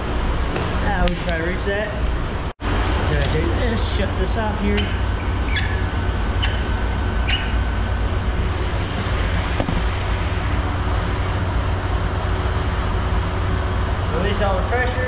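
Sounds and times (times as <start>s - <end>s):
machine rumbling: 0.0s - 15.0s
squeaks: 4.8s - 7.7s.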